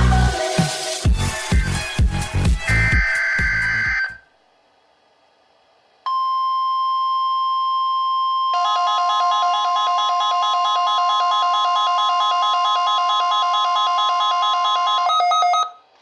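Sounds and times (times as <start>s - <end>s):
alternating electronic alarm: 2.6s - 4.2s, 8.4s - 15.8s
steady high alarm tone: 2.7s - 4.2s, 7.8s - 15.7s.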